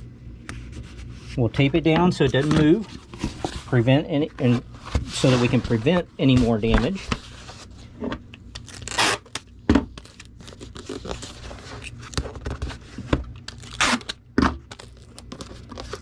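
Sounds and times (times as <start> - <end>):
packaging crinkling: 8.5 - 12.8, 13.4 - 16.0
adhesive tape tearing: 8.6 - 9.4, 13.5 - 15.0.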